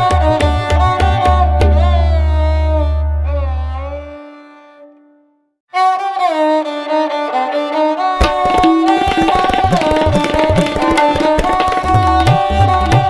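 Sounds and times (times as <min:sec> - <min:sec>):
drumming: 0:08.2 - 0:13.0.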